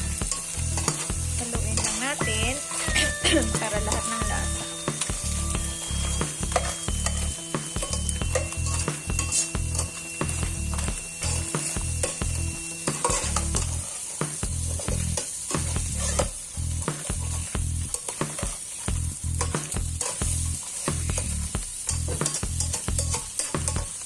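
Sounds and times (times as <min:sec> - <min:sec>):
crabs sizzling in a frying pan: 0:00.0 - 0:24.0
utensil scraping pan and shells: 0:00.0 - 0:24.0.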